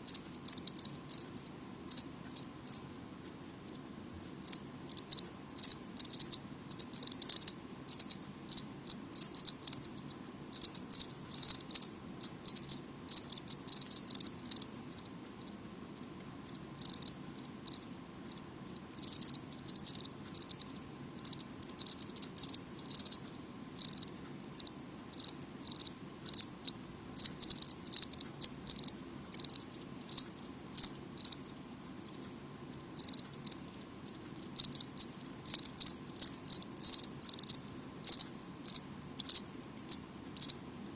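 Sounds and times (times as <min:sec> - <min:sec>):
cricket chirping: 0:00.0 - 0:01.3, 0:01.9 - 0:02.8, 0:04.4 - 0:09.8, 0:10.5 - 0:14.7, 0:16.8 - 0:17.8, 0:19.0 - 0:23.2, 0:23.8 - 0:31.4, 0:33.0 - 0:33.6, 0:34.6 - 0:40.6.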